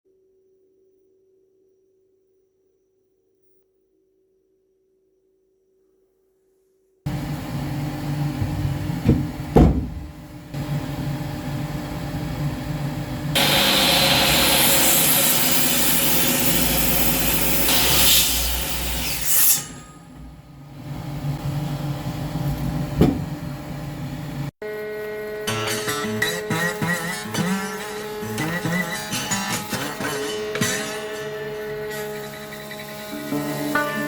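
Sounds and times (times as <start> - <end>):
loud knock: 9.0 - 10.1
table saw running: 13.2 - 19.7, 24.6 - 34.0
saw blade cutting wood: 13.4 - 20.0, 25.3 - 34.0.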